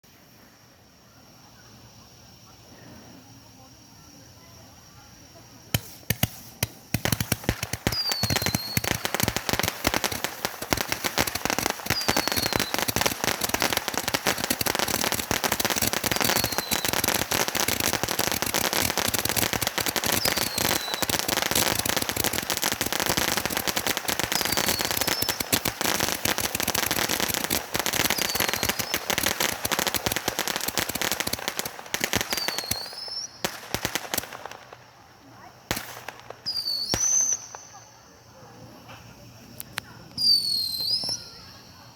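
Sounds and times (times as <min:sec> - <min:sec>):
fireworks crackling: 0:00.1 - 0:41.9.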